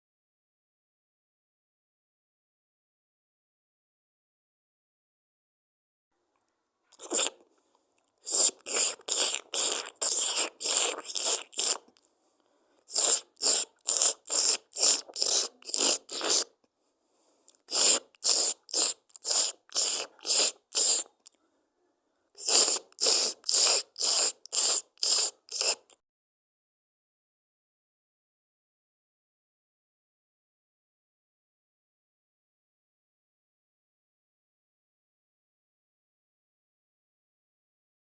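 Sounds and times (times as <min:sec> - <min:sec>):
cat chewing crunchy food: 0:08.3 - 0:12.0.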